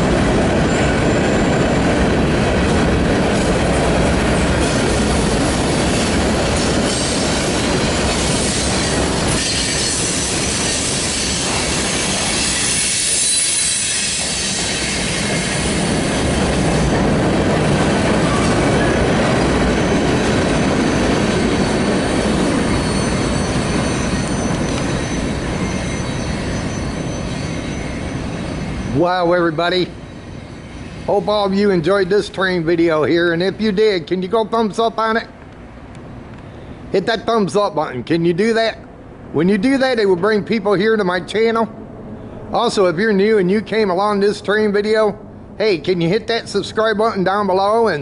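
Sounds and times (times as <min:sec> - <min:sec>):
train wheels rumbling on rail: 0:00.0 - 0:48.0
high wheel squeals: 0:04.6 - 0:17.0, 0:18.2 - 0:31.2.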